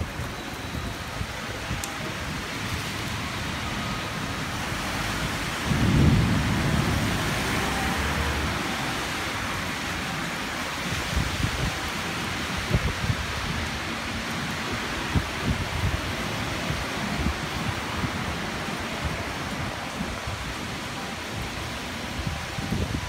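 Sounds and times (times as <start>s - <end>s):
heavy rain pouring: 0.0s - 23.0s
low rumble of thunder: 5.3s - 9.0s.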